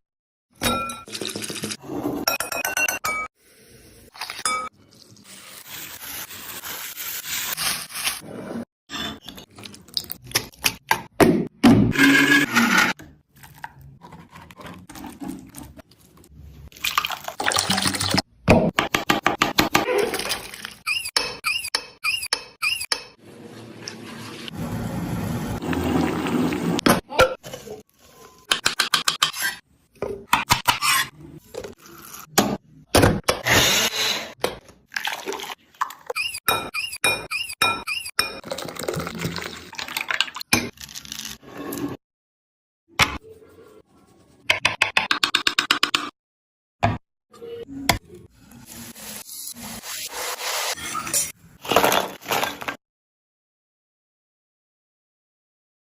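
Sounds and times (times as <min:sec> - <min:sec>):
liquid pouring or splashing: 0:14.9 - 0:18.3, 0:20.0 - 0:20.8, 0:34.9 - 0:36.1, 0:38.4 - 0:41.4.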